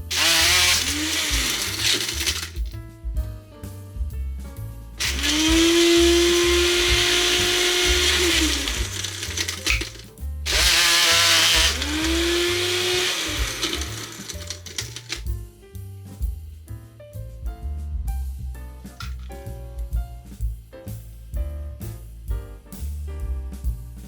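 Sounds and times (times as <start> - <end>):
blender whining: 0.0 - 2.7, 5.0 - 15.2
background music: 0.0 - 24.0.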